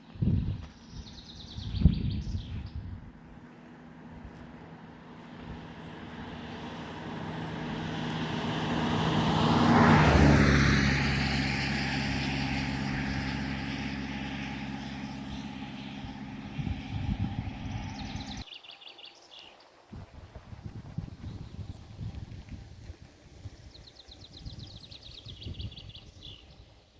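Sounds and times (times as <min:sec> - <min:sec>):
vehicle engine passing by: 0:01.1 - 0:18.4.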